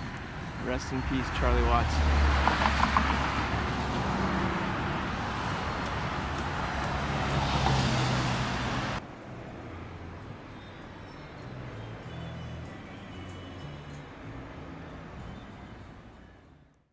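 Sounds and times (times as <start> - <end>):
car tyre and engine noise: 0.0 - 11.6.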